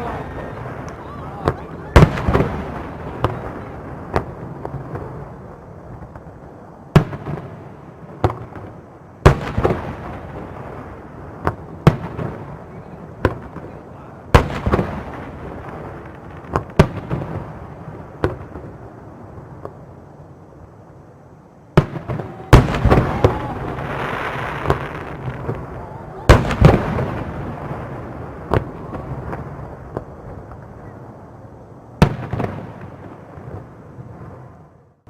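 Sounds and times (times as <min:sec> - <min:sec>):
fireworks booming: 0:00.0 - 0:35.0.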